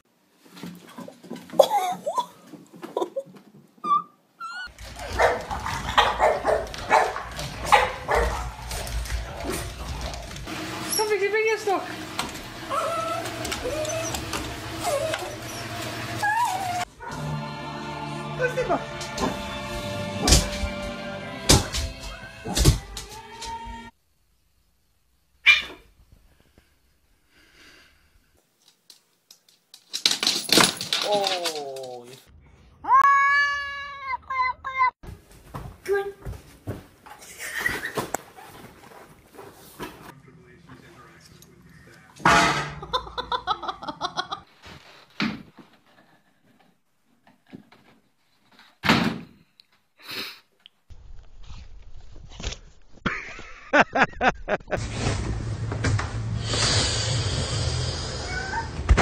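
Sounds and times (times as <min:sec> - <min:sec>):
dog barking and yipping: 0:04.5 - 0:08.9, 0:25.4 - 0:25.8
animal puff of breath: 0:56.3 - 0:58.3.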